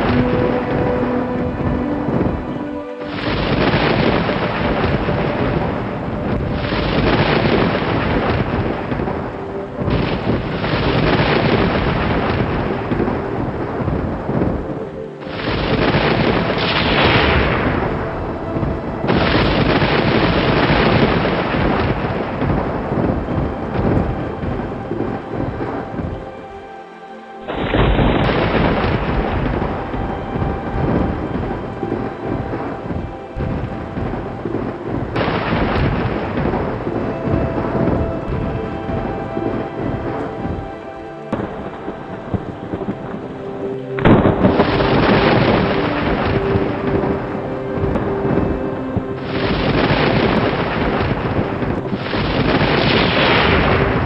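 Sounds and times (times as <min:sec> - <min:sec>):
heavy rain: 0:18.8 - 0:25.2, 0:30.6 - 0:40.8, 0:49.1 - 0:54.0
thunder rumbling: 0:18.8 - 0:25.2.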